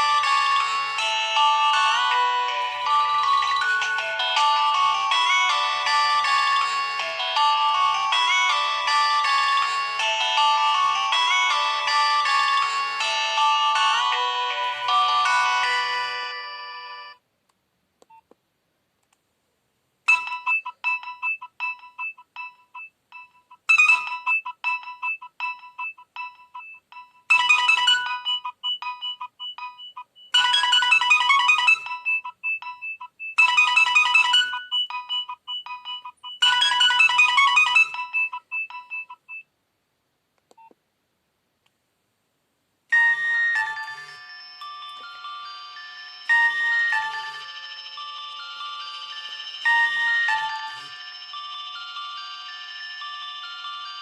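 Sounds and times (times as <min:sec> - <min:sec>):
mobile phone ringtone melody: 0:00.0 - 0:17.2, 0:20.1 - 0:39.4, 0:42.9 - 0:54.0.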